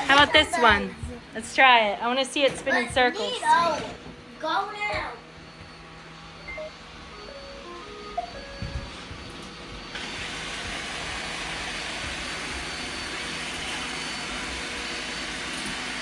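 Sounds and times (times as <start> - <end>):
robot vacuum motor whirring: 7.9 - 16.0
low thumps: 8.2 - 10.9.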